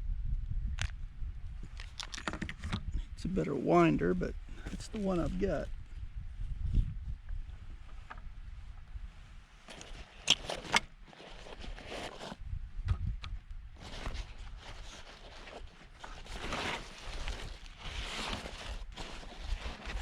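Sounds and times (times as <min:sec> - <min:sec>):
rustling and scraping: 0:04.5 - 0:05.7, 0:07.5 - 0:12.4, 0:13.8 - 0:20.0.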